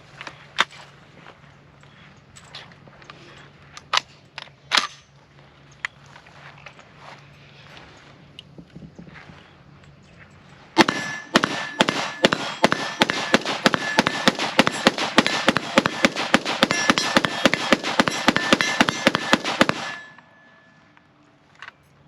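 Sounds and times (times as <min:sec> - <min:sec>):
metallic ringing tone: 0:09.7 - 0:14.9, 0:18.1 - 0:22.0
rifle shots: 0:10.8 - 0:20.2.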